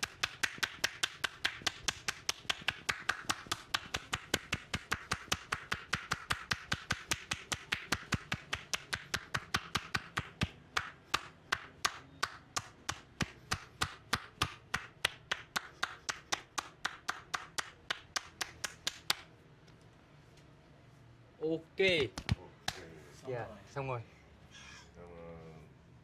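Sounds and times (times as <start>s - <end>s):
hands slapping a back: 0.0s - 19.3s, 21.8s - 22.9s.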